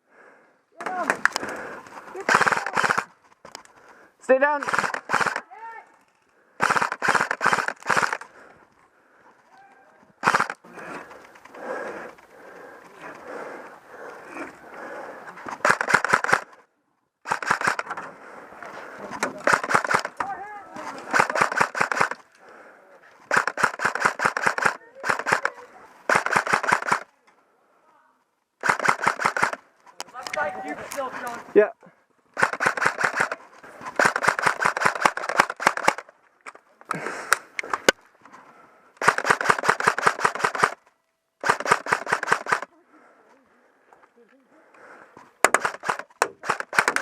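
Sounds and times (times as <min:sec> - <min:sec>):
airsoft rifle firing bursts: 0:02.2 - 0:03.1, 0:04.4 - 0:05.4, 0:06.6 - 0:08.4, 0:10.2 - 0:10.7, 0:15.6 - 0:16.6, 0:17.2 - 0:17.9, 0:19.4 - 0:20.2, 0:21.0 - 0:22.2, 0:23.3 - 0:27.1, 0:28.6 - 0:29.7, 0:32.4 - 0:36.1, 0:39.0 - 0:40.8, 0:41.4 - 0:42.7, 0:45.4 - 0:47.0.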